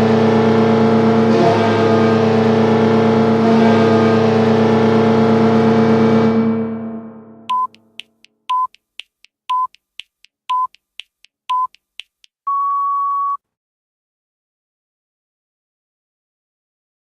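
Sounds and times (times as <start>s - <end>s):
arena goal horn: 1.2s - 7.4s
countdown timer beeps: 7.5s - 13.4s.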